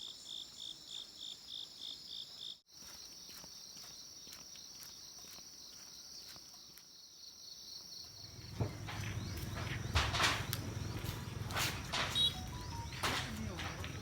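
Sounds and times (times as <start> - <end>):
insects chirring: 0.0 - 14.0
low rumbling noise: 8.3 - 14.0
sharp clicks: 8.3 - 14.0.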